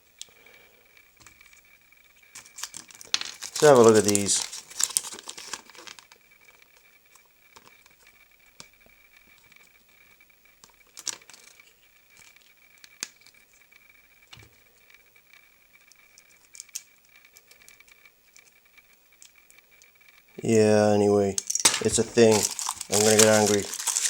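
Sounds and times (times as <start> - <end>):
plastic toy parts clicking: 2.3 - 6.2, 10.6 - 13.4, 15.8 - 19.9, 21.4 - 24.0
wrappers crinkling: 2.4 - 6.2, 10.9 - 11.6, 21.4 - 24.0.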